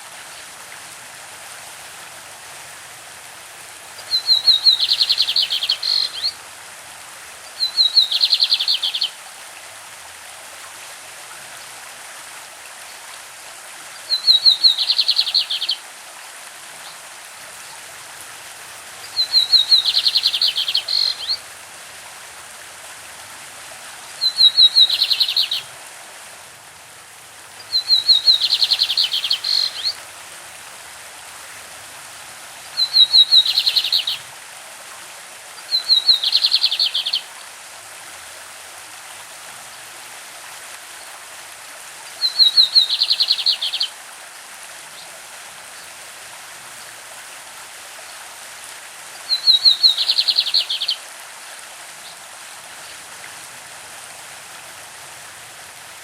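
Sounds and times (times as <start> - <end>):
stream running: 0.0 - 56.0
bird singing with buzzy trill: 4.1 - 6.3, 7.6 - 9.1, 14.2 - 15.8, 19.2 - 21.4, 24.2 - 25.6, 27.7 - 29.9, 32.8 - 34.2, 42.3 - 43.9.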